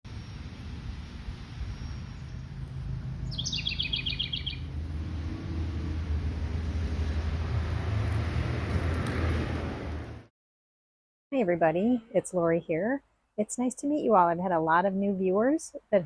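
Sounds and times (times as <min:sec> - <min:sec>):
songbird trill: 0:00.1 - 0:04.8
steady low rumble: 0:00.1 - 0:10.3.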